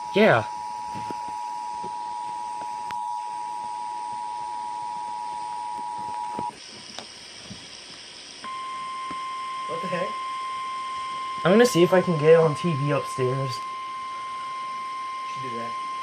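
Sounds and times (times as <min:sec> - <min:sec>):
faint hiss: 0:05.1 - 0:15.8.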